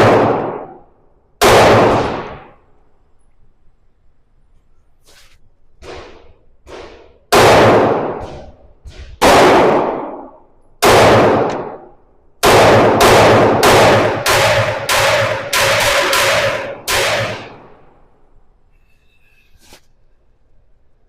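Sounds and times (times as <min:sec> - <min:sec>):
pistol shots echoing: 0:00.0 - 0:02.6, 0:05.8 - 0:17.9.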